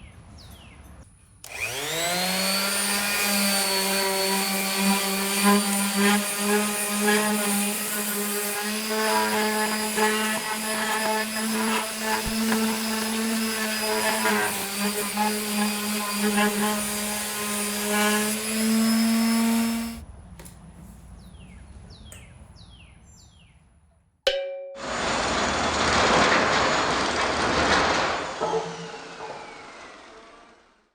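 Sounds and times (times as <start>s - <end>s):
power tool motor running: 1.4s - 20.0s.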